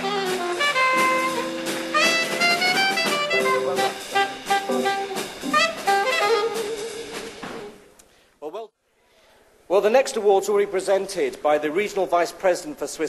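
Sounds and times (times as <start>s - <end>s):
upbeat jazz with saxophone and brass: 0.0s - 7.8s.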